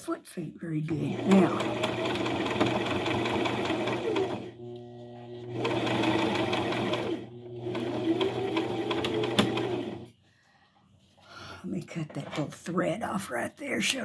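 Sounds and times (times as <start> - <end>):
electric sewing machine stitching: 0.9 - 10.1.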